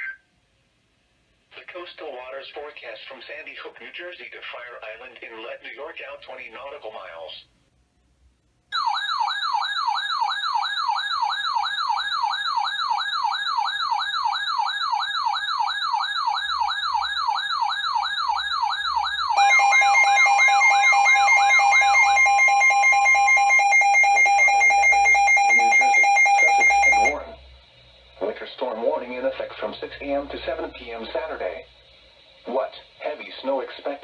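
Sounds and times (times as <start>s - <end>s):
pulsing steady alert tones: 13.0s - 27.4s
warbling electronic alert tone: 19.4s - 27.4s.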